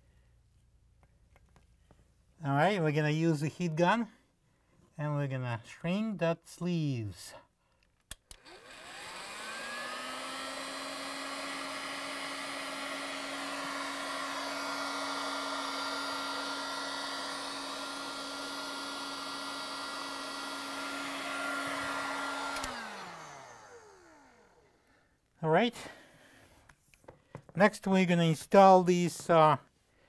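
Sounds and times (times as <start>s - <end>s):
heat gun fan whining and blowing: 8.1s - 25.0s.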